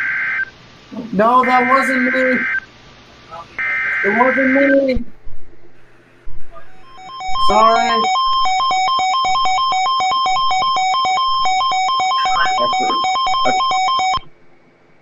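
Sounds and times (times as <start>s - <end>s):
electronic two-tone signal: 6.8s - 14.2s.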